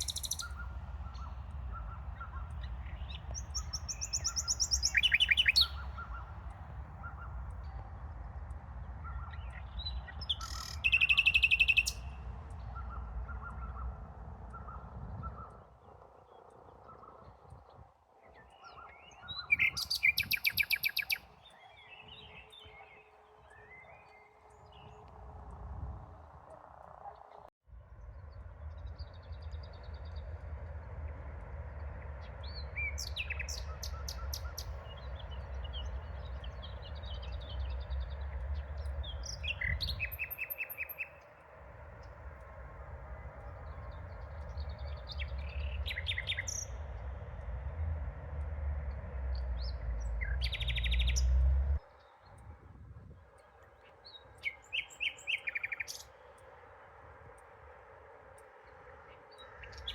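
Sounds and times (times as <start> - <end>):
steady low rumble: 0.0 - 16.0, 27.8 - 40.7, 41.5 - 51.8
songbirds chirping: 0.0 - 27.5, 28.1 - 59.9.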